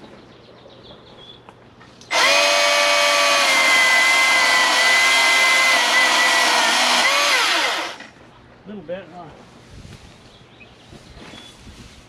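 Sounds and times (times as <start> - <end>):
electric chainsaw whining: 2.1 - 8.1.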